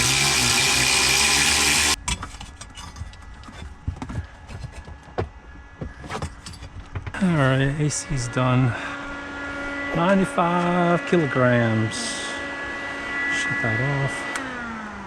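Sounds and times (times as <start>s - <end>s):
refrigerant recovery machine hissing: 0.0s - 2.0s.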